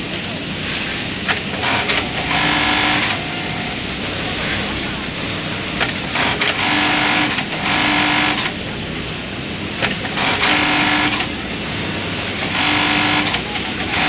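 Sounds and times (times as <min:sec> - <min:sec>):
machine clicks: 0:01.2 - 0:03.2, 0:05.8 - 0:08.6, 0:09.8 - 0:11.4
sewing machine stitching: 0:01.3 - 0:04.8, 0:05.8 - 0:08.6, 0:09.8 - 0:11.4, 0:12.2 - 0:14.0.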